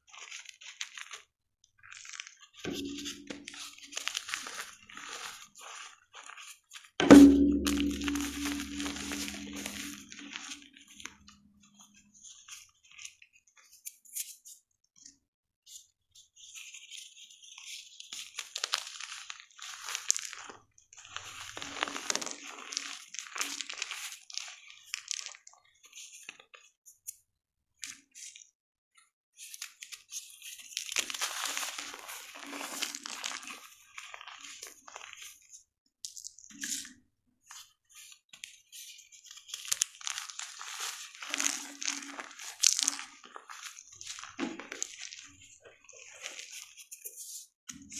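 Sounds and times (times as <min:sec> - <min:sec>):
chalk crunching and crackling: 0:01.9 - 0:06.9, 0:29.6 - 0:35.5, 0:37.5 - 0:47.9.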